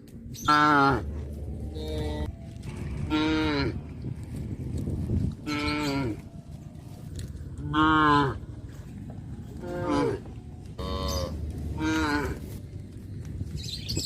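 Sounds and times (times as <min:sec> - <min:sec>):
cattle mooing: 0:00.5 - 0:03.8, 0:05.4 - 0:06.2, 0:07.6 - 0:08.4, 0:09.6 - 0:12.5.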